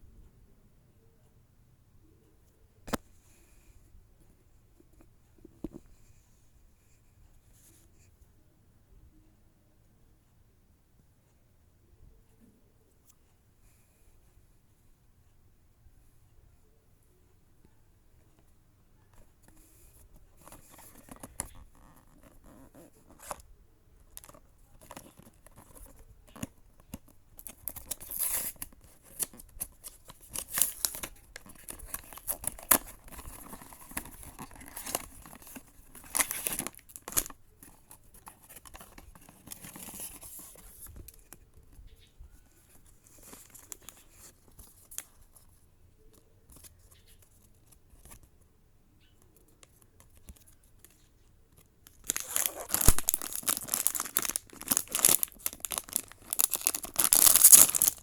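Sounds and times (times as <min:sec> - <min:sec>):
packaging rustling: 0:27.4 - 0:41.3, 0:51.9 - 0:58.0
packaging tearing and crinkling: 0:27.7 - 0:37.4, 0:51.9 - 0:58.0.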